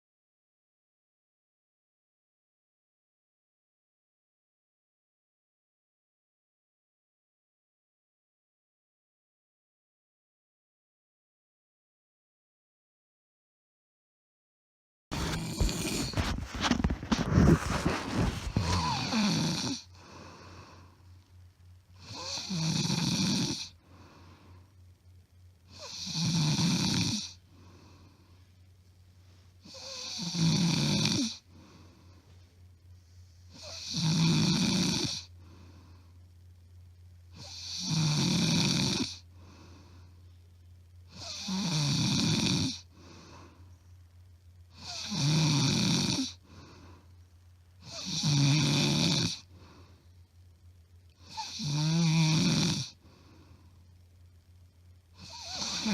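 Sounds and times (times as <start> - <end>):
woman snoring loudly: 15.1 - 20.7, 22.0 - 23.8, 25.7 - 27.4, 29.7 - 31.5, 33.6 - 35.3, 37.4 - 39.2, 41.1 - 42.9, 44.8 - 46.4, 47.8 - 49.5, 51.2 - 53.0, 55.2 - 55.9
quiet breathing: 15.1 - 22.7, 23.5 - 26.0, 27.1 - 30.4, 31.1 - 33.9, 35.2 - 37.6, 39.1 - 41.1, 42.7 - 45.0, 46.2 - 51.6, 52.8 - 54.3.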